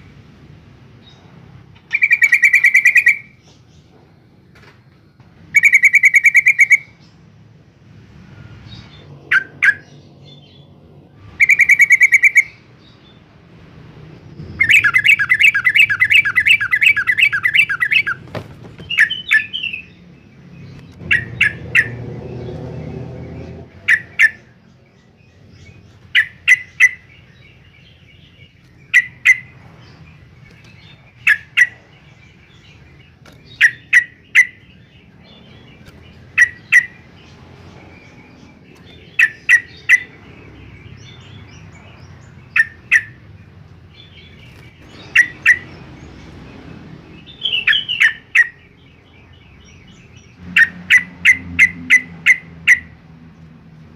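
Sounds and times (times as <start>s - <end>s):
bird scolding chatter: 1.8s - 3.6s, 11.3s - 12.6s, 14.4s - 20.0s, 25.8s - 53.0s.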